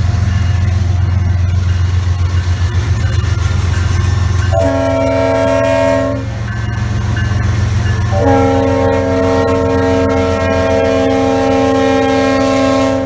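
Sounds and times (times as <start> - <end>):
monorail horn chord: 4.5 - 6.5, 7.9 - 13.0.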